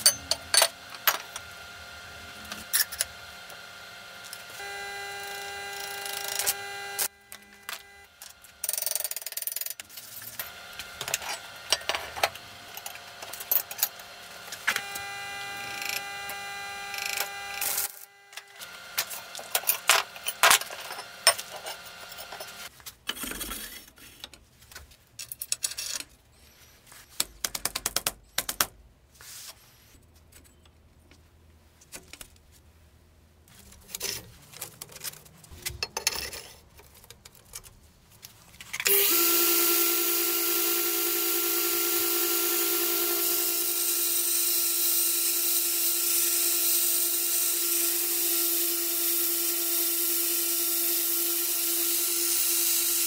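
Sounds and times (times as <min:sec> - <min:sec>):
metal tools clinking and clanking: 0:00.0 - 0:00.8, 0:33.9 - 0:36.9.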